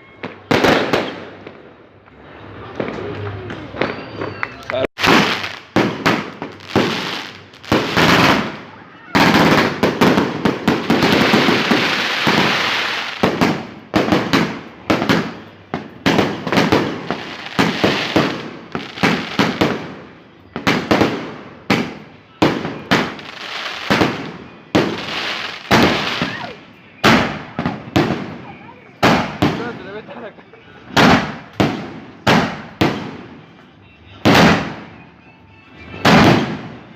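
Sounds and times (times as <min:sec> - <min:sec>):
fireworks crackling: 0:00.0 - 0:35.1, 0:35.8 - 0:36.9
fireworks bangs and pops: 0:00.2 - 0:30.2, 0:30.9 - 0:35.0, 0:35.8 - 0:36.9.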